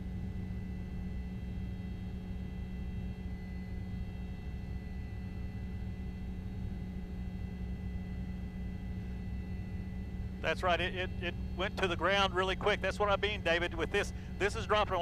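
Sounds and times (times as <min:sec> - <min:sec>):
low drone hum: 0:09.0 - 0:15.0.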